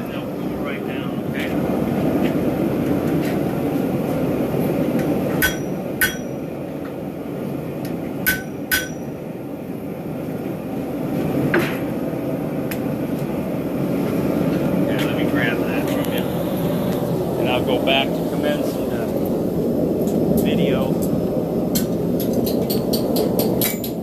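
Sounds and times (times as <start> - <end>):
steady rushing noise: 0.0 - 24.0
hammer striking anvil: 5.4 - 6.4, 8.2 - 9.2, 22.5 - 24.0.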